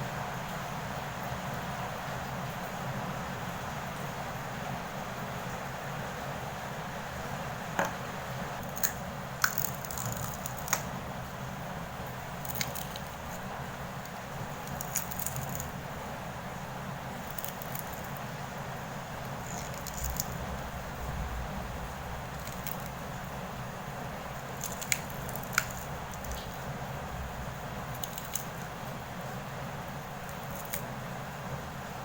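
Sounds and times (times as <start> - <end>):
low steady hiss: 0.0 - 32.0
eggshell cracking: 8.6 - 11.0, 12.3 - 15.8, 17.2 - 18.2, 19.2 - 20.5, 22.2 - 23.1, 24.3 - 26.7, 27.9 - 28.8, 30.2 - 30.9.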